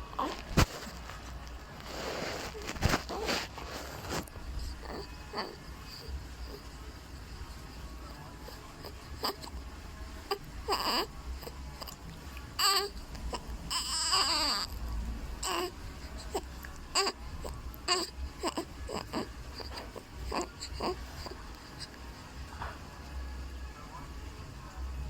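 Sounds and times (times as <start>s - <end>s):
baby crying and whimpering: 0.0s - 0.9s, 2.4s - 6.8s, 10.3s - 12.0s, 12.6s - 14.8s, 15.4s - 22.1s.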